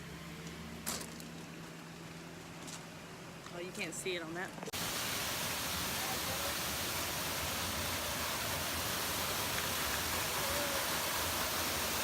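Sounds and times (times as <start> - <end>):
waterfall rushing: 4.8 - 12.0.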